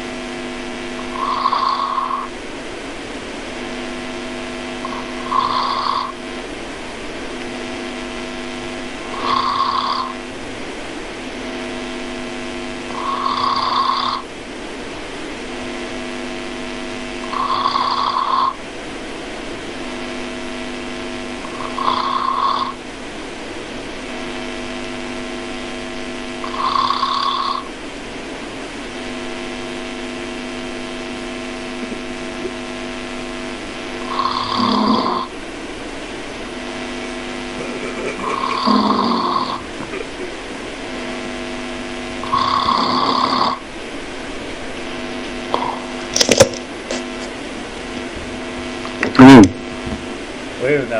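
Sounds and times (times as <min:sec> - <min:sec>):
steady humming tone: 0:00.0 - 0:50.9
person snoring: 0:01.0 - 0:02.4, 0:04.8 - 0:06.2, 0:09.0 - 0:10.2, 0:12.9 - 0:14.2, 0:17.2 - 0:18.6, 0:21.4 - 0:22.8, 0:26.4 - 0:27.7, 0:34.0 - 0:35.3, 0:37.0 - 0:40.3, 0:42.2 - 0:43.6, 0:45.5 - 0:45.9.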